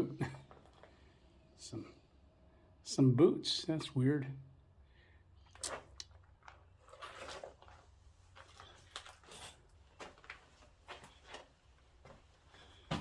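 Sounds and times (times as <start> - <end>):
footsteps crunching over debris: 5.7 - 13.0.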